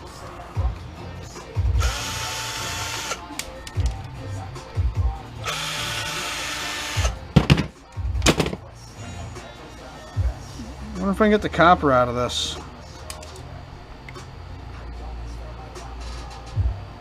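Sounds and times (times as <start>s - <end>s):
small electric motor spinning up: 1.8s - 3.2s, 5.5s - 7.2s.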